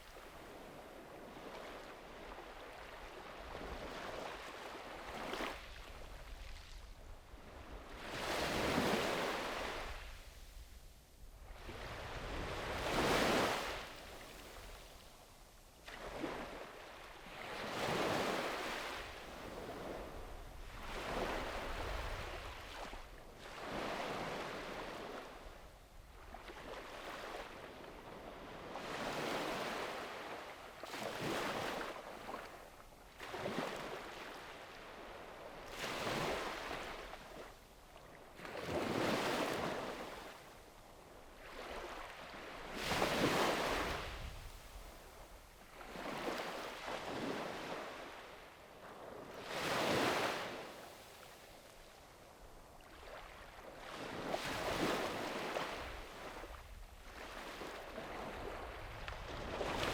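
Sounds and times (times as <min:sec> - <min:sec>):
sea waves washing on beach: 0:52.6 - 0:59.9.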